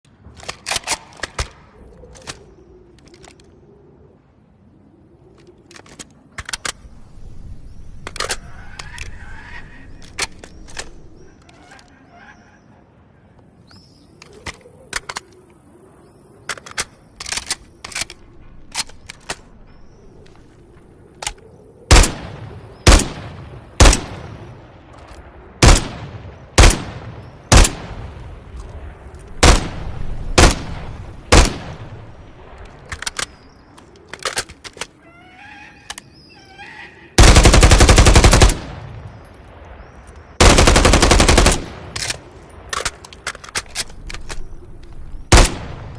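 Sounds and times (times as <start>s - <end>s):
rifle shots: 25.6s - 28.0s, 29.4s - 31.9s, 45.3s - 45.9s.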